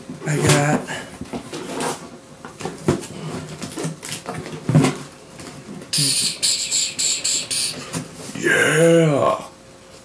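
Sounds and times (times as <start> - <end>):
packaging crinkling and rustling: 3.4 - 5.5.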